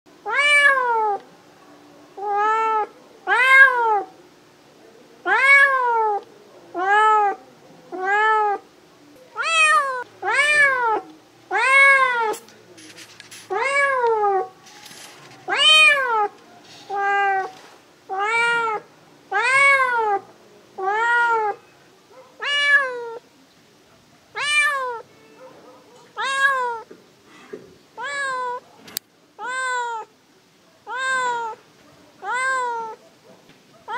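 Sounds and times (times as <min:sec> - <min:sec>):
cat meowing: 0:00.2 - 0:01.2, 0:02.2 - 0:04.1, 0:05.2 - 0:08.6, 0:09.4 - 0:12.4, 0:13.5 - 0:14.5, 0:15.4 - 0:20.2, 0:20.8 - 0:21.7, 0:22.4 - 0:23.2, 0:24.3 - 0:26.9, 0:28.0 - 0:28.6, 0:29.4 - 0:30.1, 0:30.8 - 0:31.6, 0:32.2 - 0:33.0.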